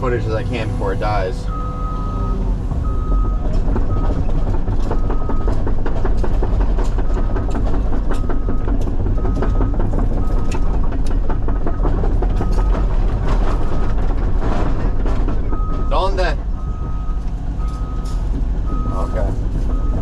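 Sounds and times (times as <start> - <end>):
excavator running under load: 0.0 - 20.0
backup alarm beeping: 1.5 - 5.6, 15.5 - 20.0
steel tracks and bucket clanking: 2.4 - 20.0.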